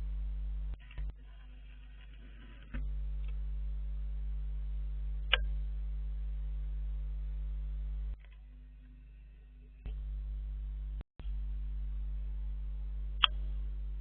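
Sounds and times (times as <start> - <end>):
low electrical hum: 0.0 - 14.0.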